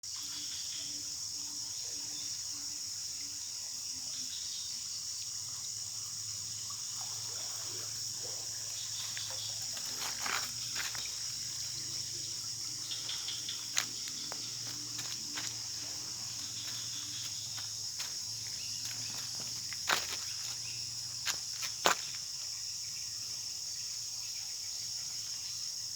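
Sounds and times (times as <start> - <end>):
high-pitched insect chorus: 0.0 - 25.9.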